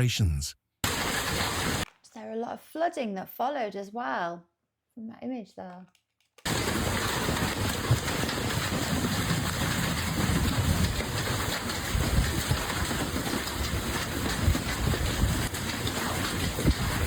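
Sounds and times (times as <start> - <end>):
hail and rain pounding: 0.8 - 1.8, 6.5 - 17.0.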